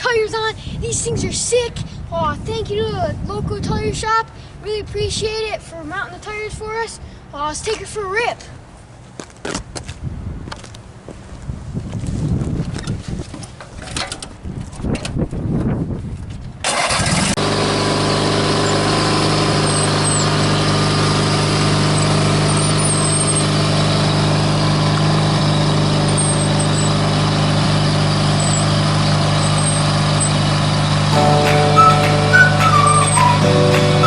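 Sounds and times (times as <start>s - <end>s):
riding lawn mower engine: 16.7s - 31.1s.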